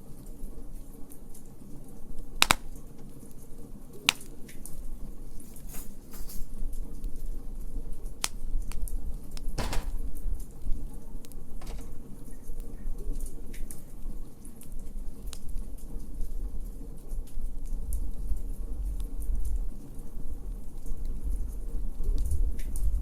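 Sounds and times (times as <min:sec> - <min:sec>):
wood fire crackling and popping: 0:02.4 - 0:02.8.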